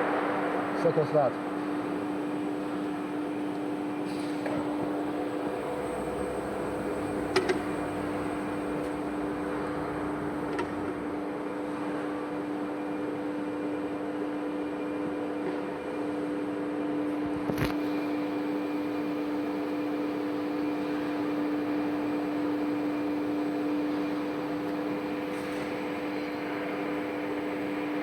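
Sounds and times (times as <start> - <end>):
machine hum: 0.0 - 13.6.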